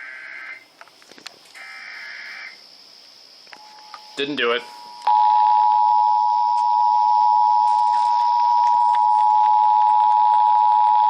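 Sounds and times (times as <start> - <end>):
two-tone alert signal: 4.8 - 11.0.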